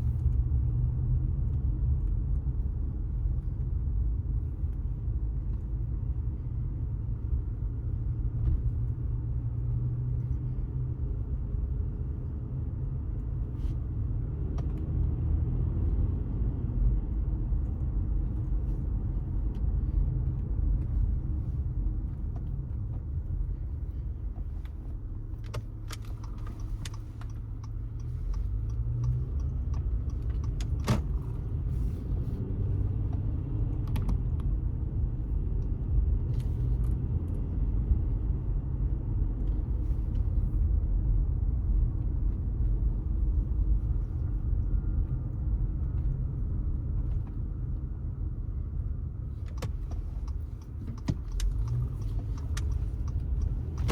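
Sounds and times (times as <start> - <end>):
car engine and tyres rumbling: 0.0 - 53.9
sharp clicks and rattles: 24.4 - 31.4, 49.4 - 53.9.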